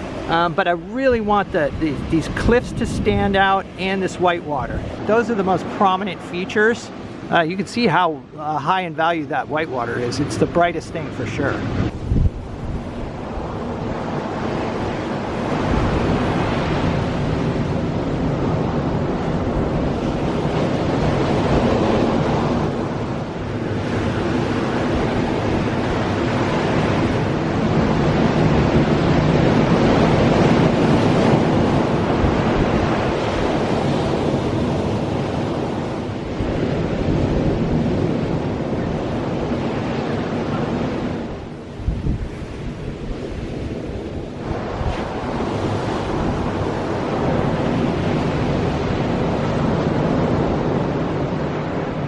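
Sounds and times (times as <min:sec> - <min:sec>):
ocean surf rushing on beach: 0:00.0 - 0:52.0
wind buffeting microphone: 0:00.0 - 0:52.0.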